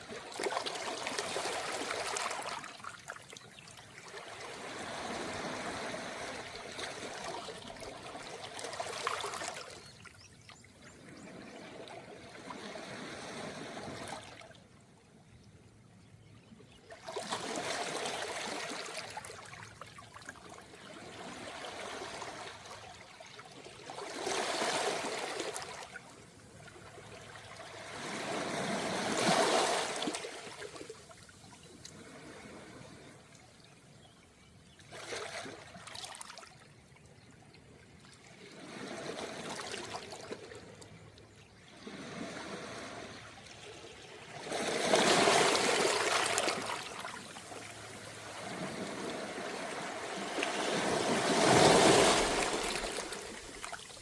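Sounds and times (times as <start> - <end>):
small waves washing on pebbles: 44.4 - 54.0.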